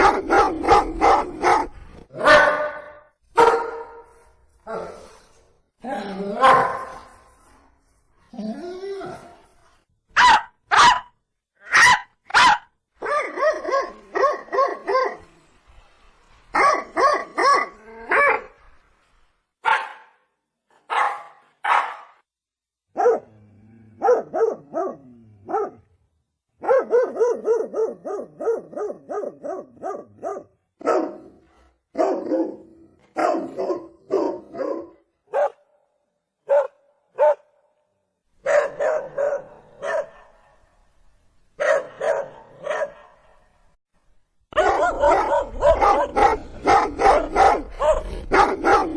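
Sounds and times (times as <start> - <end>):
dog barking: 0.0 - 4.1, 6.4 - 7.1, 10.2 - 11.1, 11.7 - 15.2, 16.6 - 18.5, 19.6 - 20.2, 20.8 - 22.2, 22.9 - 23.3, 24.0 - 25.8, 26.6 - 35.7, 36.4 - 37.6, 38.4 - 40.6, 41.6 - 43.4, 44.5 - 48.9.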